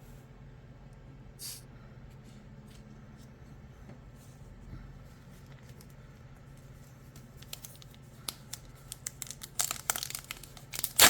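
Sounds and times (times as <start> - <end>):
low steady hum: 0.0 - 11.0
foil wrapper crinkling and tearing: 7.2 - 11.0.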